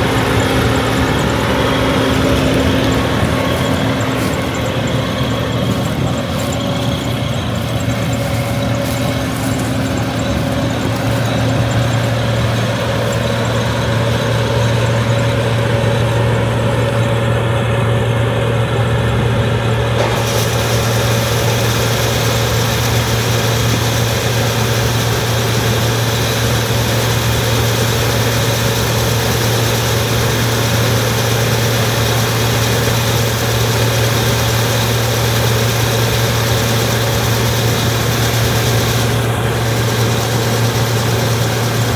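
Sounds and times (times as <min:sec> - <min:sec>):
high hiss: 0:00.0 - 0:17.1, 0:32.8 - 0:41.9
combine engine drone: 0:00.0 - 0:41.9
machinery noise: 0:00.0 - 0:41.9.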